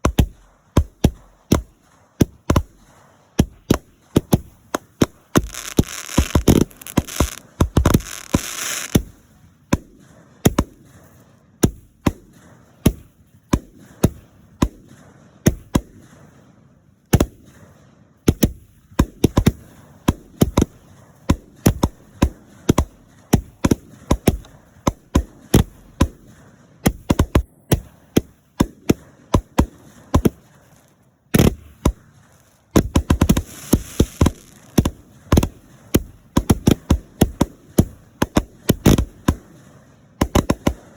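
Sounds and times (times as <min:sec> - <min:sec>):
firework bangs: 0:00.0 - 0:40.9
firework crackling hiss: 0:05.3 - 0:09.1, 0:30.5 - 0:35.4.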